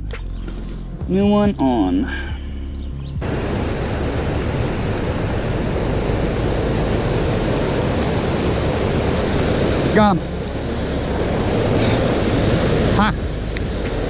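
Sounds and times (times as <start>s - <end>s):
river rapids rushing: 3.2s - 14.0s.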